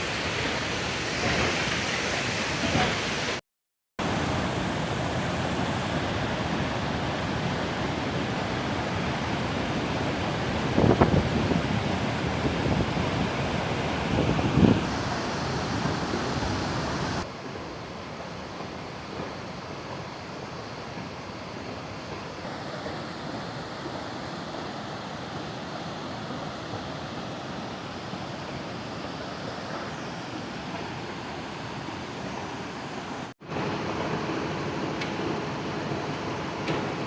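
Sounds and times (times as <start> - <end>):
waterfall rushing: 0.0 - 3.4, 4.0 - 17.3, 20.0 - 36.6
wind on microphone: 4.2 - 17.2.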